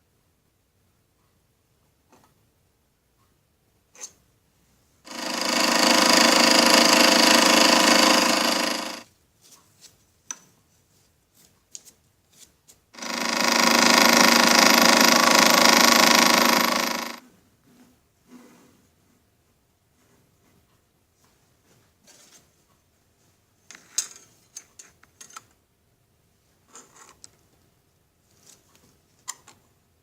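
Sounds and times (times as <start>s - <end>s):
power tool buzzing whine: 5.1s - 9.0s, 13.0s - 17.2s.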